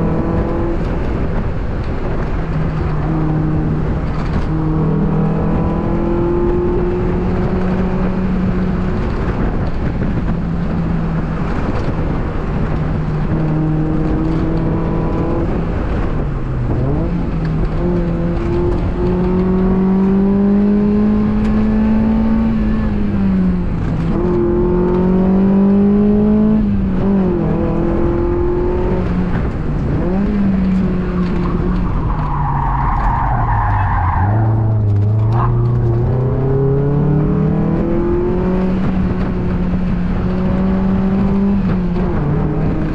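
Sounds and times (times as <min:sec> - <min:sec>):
car engine under hard driving: 0:00.0 - 0:42.9
tires squealing: 0:30.2 - 0:36.8.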